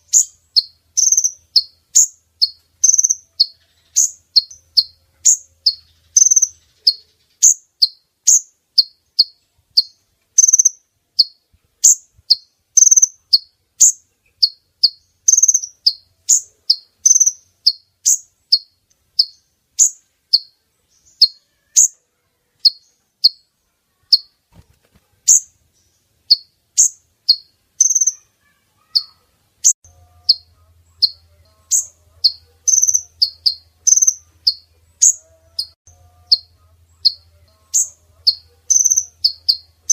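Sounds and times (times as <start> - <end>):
bird high sharp chirps: 0.0 - 22.0, 22.6 - 24.4, 25.2 - 39.9
faint low hum: 28.8 - 39.9.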